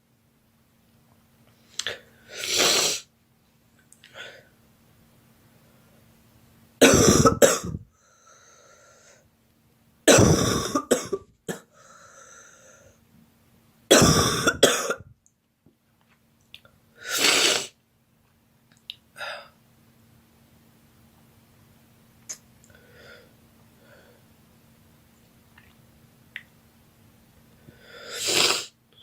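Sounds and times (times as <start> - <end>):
girl coughing: 6.8 - 7.8, 10.1 - 11.7, 13.9 - 15.1.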